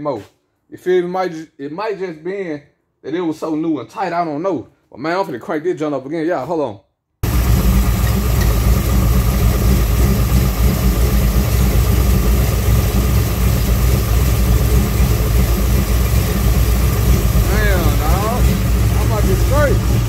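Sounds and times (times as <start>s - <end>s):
car engine idling: 7.2s - 20.0s.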